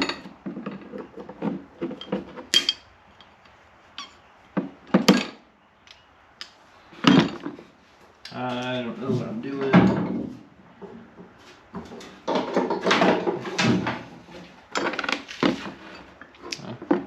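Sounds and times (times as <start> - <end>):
metal tools rattling: 0.0 - 3.4.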